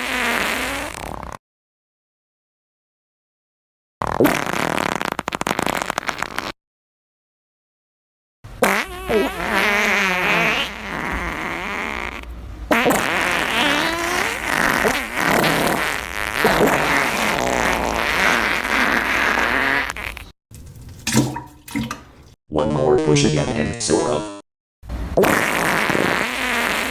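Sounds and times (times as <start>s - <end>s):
fart sound effect: 0.0s - 1.4s, 4.0s - 6.5s, 25.2s - 26.9s.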